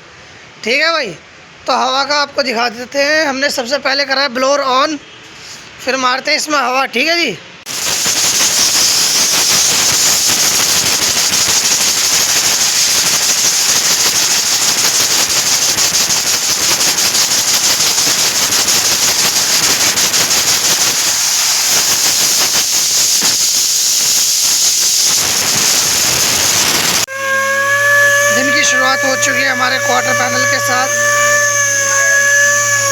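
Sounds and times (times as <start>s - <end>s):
air blowing hiss: 7.7s - 27.2s, 28.2s - 32.9s.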